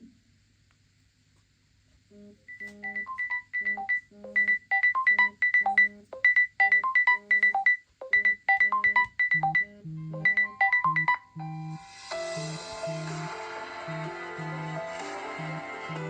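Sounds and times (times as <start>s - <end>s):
phone ringtone melody: 2.5s - 13.0s.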